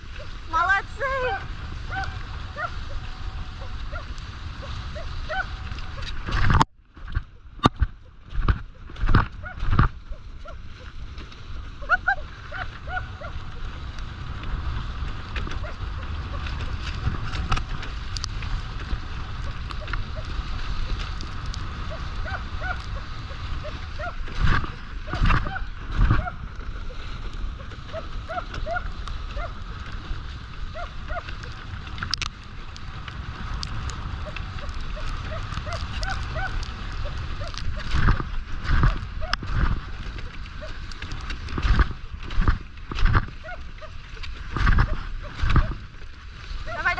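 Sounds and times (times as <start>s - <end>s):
rush of travel over snow: 0.0s - 46.9s
wind rumble on microphone: 0.0s - 46.9s
dogs yelping: 1.8s - 6.1s, 11.8s - 13.7s, 19.4s - 20.6s, 21.8s - 24.3s, 25.1s - 26.4s, 27.6s - 29.6s, 30.7s - 31.6s, 34.2s - 37.9s
dog yipping: 1.9s - 3.1s, 3.9s - 6.1s, 27.9s - 29.6s, 35.0s - 36.7s.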